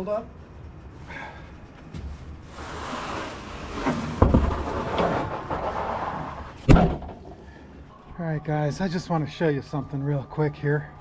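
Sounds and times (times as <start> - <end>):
rustling and scraping: 0.5 - 7.6
heavy thud: 6.6 - 7.4.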